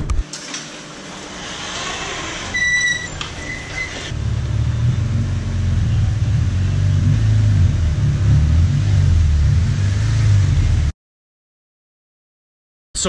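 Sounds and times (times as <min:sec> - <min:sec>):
loud deep exhaust rumble: 0:04.1 - 0:10.9.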